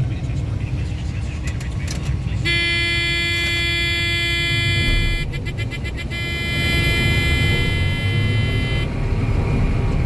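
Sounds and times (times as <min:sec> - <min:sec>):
combine engine rumbling: 0:00.0 - 0:10.0
buzzy warning horn: 0:02.4 - 0:09.0.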